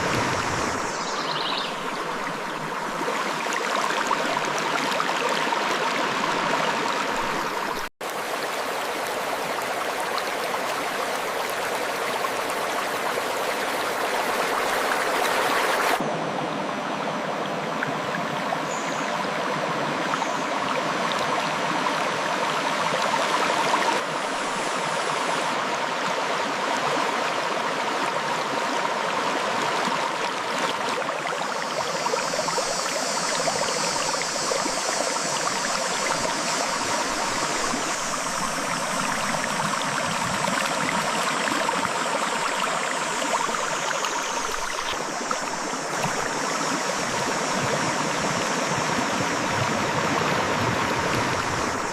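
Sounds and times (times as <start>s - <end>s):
river water flowing over rocks: 0.0s - 16.0s, 17.6s - 51.9s
high hiss: 31.4s - 49.5s.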